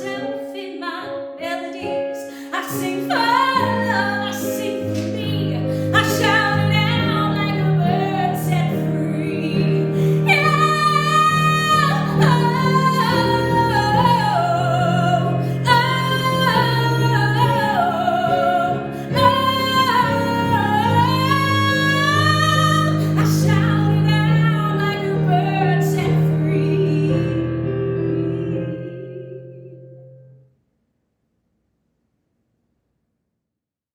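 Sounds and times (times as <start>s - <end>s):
woman singing with vibrato: 0.0s - 29.9s
sustained keyboard chords: 3.4s - 30.3s.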